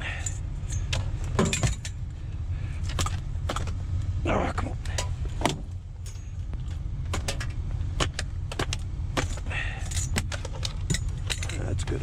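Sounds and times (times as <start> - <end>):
steady low rumble: 0.0 - 12.0
scrap items clicking and clattering: 7.1 - 12.0.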